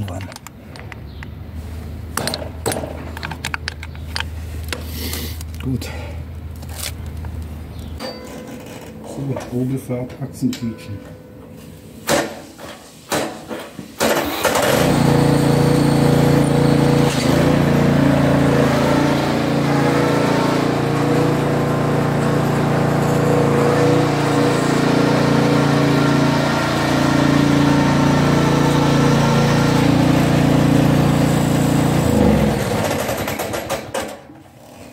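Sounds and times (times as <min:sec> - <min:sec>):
garden tractor engine running: 0:14.0 - 0:34.8.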